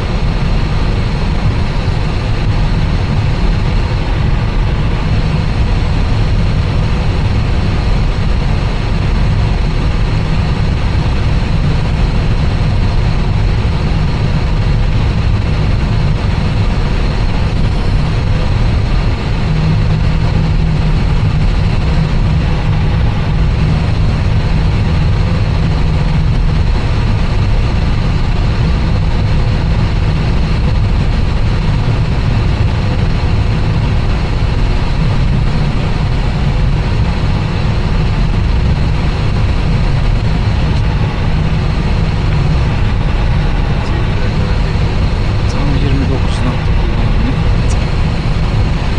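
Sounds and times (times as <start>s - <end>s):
jet engines idling: 0.0s - 48.9s
low steady hum: 0.0s - 48.9s.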